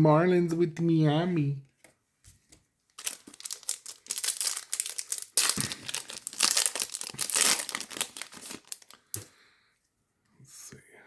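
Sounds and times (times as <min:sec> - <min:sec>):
foil wrapper crinkling: 0:02.9 - 0:09.3.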